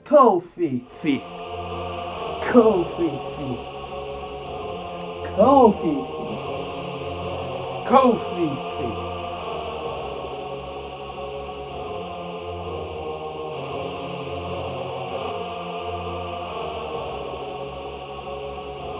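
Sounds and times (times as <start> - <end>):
choir-like chant of held notes: 0.0 - 18.9.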